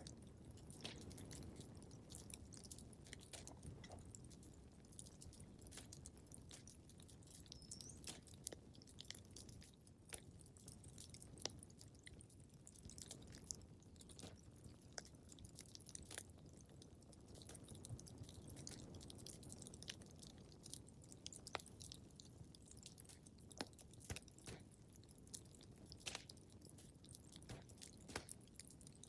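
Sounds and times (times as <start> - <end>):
low rumble of flames: 0.0 - 29.0
wood fire crackling and popping: 0.0 - 29.0.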